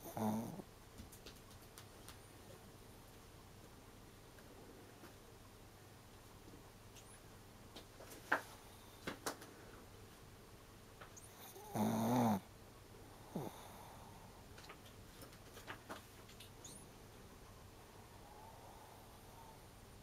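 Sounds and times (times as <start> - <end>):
dog snoring: 0.0 - 0.7, 11.2 - 12.5, 13.2 - 14.2.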